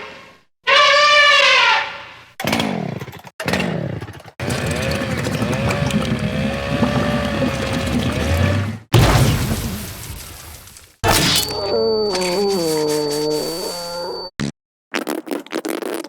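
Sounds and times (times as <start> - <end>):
noisy crash: 8.9 - 11.5
buzzing motor-like sound with whine: 11.1 - 14.4.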